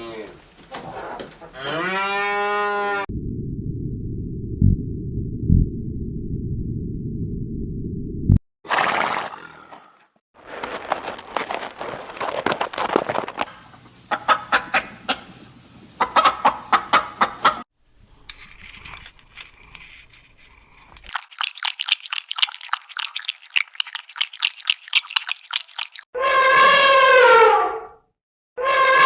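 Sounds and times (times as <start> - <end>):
hens clucking: 14.1 - 15.4, 16.0 - 17.6
fast clicking animal calls: 21.0 - 26.0.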